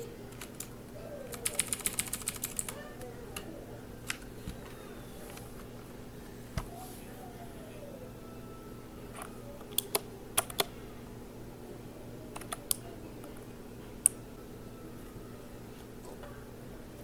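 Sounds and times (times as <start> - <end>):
mechanical keyboard keys clacking: 0.0 - 0.7, 1.3 - 2.8, 9.2 - 10.7, 12.4 - 12.8
faint steady hum: 0.0 - 17.0.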